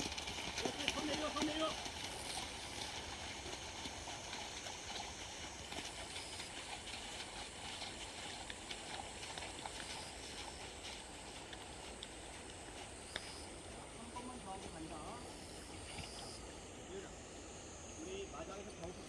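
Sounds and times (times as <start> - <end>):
horse hoof clops: 0.0 - 5.1
grass insects chirping: 0.0 - 19.0.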